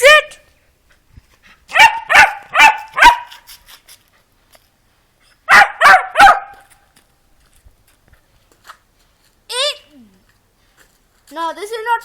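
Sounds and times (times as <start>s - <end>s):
dog barking: 1.7s - 3.4s, 5.5s - 6.6s.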